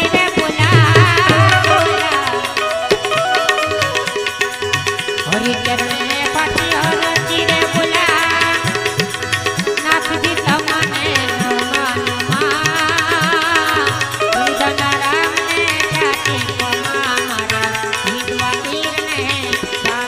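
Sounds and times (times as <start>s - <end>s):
wavering lead instrument melody: 0.0s - 8.0s
hand drum rhythm: 0.0s - 20.0s.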